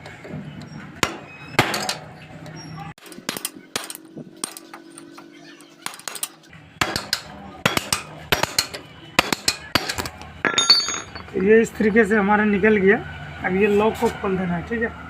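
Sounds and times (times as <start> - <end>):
hammer striking metal punch: 3.0 - 4.7, 5.8 - 11.5.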